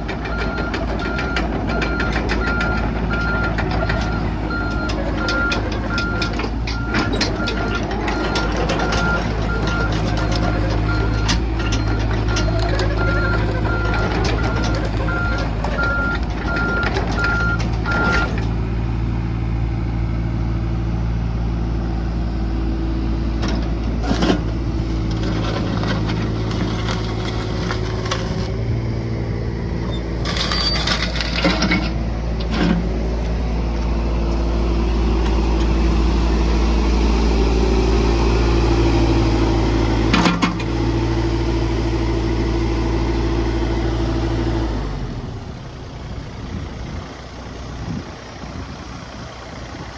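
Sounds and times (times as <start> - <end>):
excavator diesel engine running: 0.0 - 49.9
regular beeping alarm: 0.3 - 18.3.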